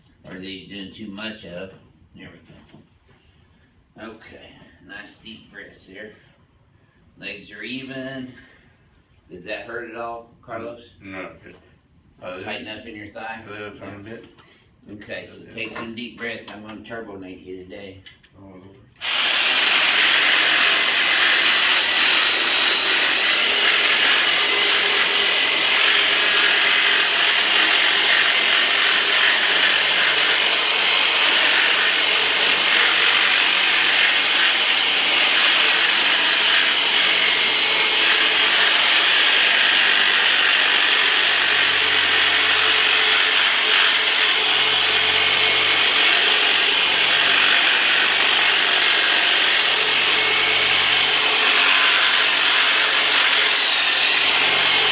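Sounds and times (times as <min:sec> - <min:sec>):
electric massager motor whirring: 0:19.0 - 0:54.9.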